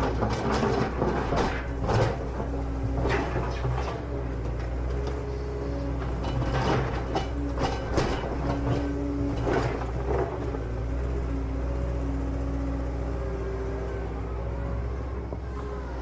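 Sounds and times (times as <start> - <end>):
gravel scraping and clattering: 0.0 - 5.2, 6.0 - 10.8.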